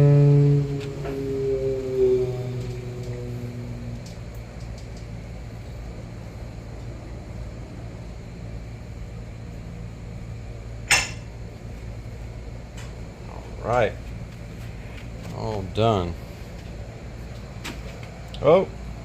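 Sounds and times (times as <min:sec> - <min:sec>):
car lift humming: 0:00.0 - 0:13.9.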